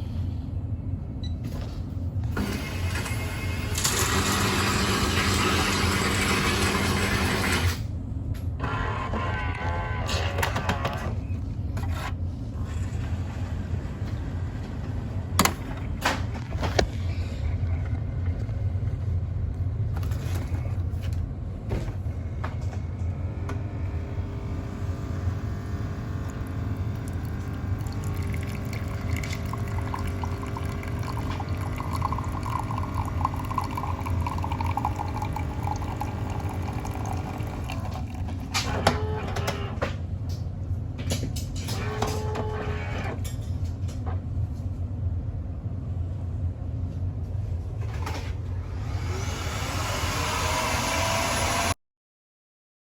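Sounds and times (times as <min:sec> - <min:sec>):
coffee machine humming: 0:02.1 - 0:40.0, 0:47.9 - 0:51.7
buzzing tonal whine: 0:22.6 - 0:28.8
water pouring: 0:26.2 - 0:38.4.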